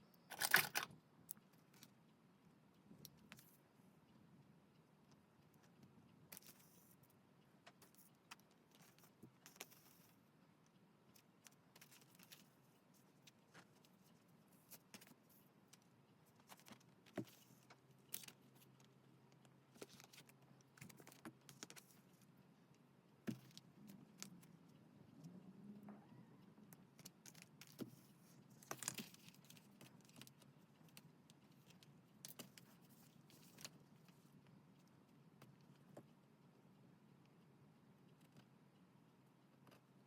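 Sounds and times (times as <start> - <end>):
paper and stationery rustling: 11.1 - 18.9, 19.7 - 22.2, 27.0 - 34.4.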